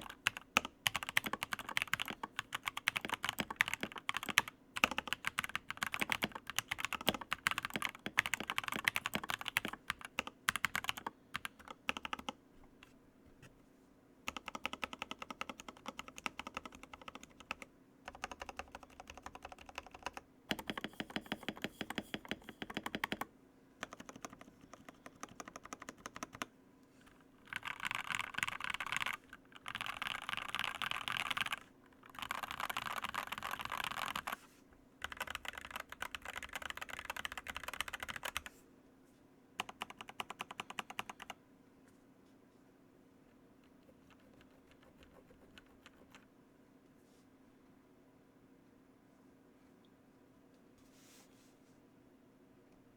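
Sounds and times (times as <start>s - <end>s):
clacky mechanical keyboard typing: 0.0s - 12.4s, 14.3s - 26.5s, 27.4s - 34.4s, 35.0s - 38.5s, 39.6s - 41.4s.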